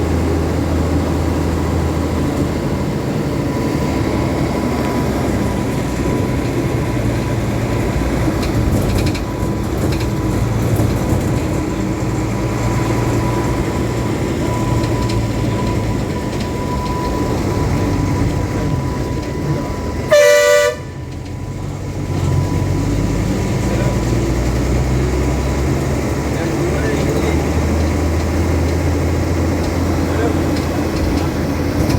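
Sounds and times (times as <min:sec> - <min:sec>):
vehicle engine and road rumble: 0:00.0 - 0:31.9
two-tone car horn blast: 0:20.0 - 0:21.1.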